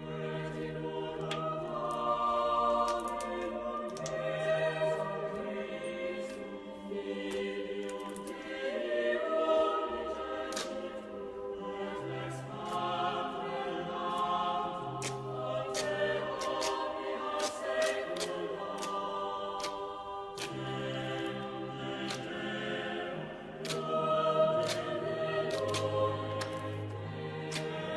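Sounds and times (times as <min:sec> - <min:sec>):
choir-like background music: 0:00.0 - 0:27.9.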